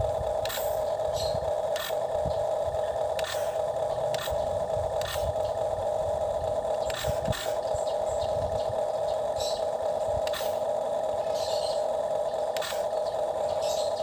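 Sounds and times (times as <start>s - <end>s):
toy motor whirring: 0.0s - 14.0s
toy clicks and scrapes: 0.2s - 2.2s, 3.0s - 5.7s, 6.6s - 7.7s, 10.2s - 13.0s.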